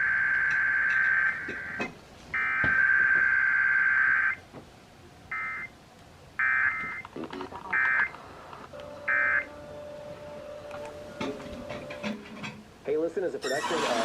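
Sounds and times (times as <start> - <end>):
harsh two-tone data buzzing: 0.0 - 4.4, 6.4 - 12.0.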